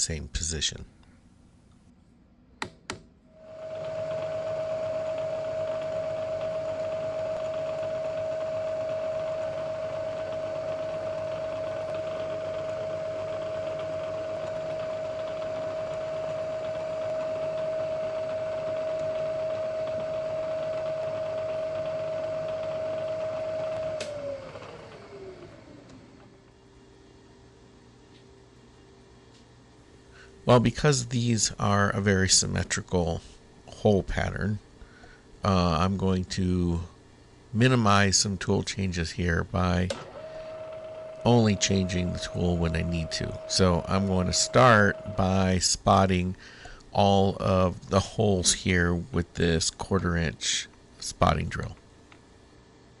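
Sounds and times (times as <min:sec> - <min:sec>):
switch click: 0:02.6 - 0:03.1
milling machine motor running: 0:03.4 - 0:26.4, 0:39.9 - 0:46.1.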